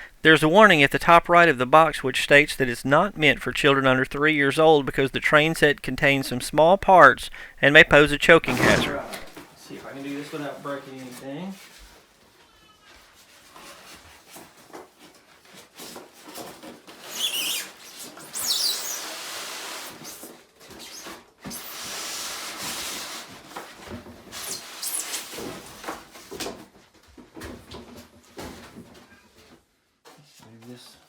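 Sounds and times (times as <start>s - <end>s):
styrofoam squeaking: 7.7s - 9.4s, 16.9s - 19.1s
cardboard rustling and scraping: 8.0s - 9.4s.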